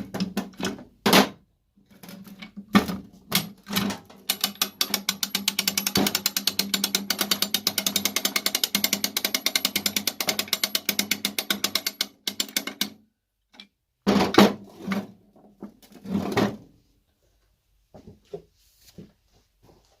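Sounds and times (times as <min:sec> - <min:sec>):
rapid ratcheting clicks: 0:04.2 - 0:13.0.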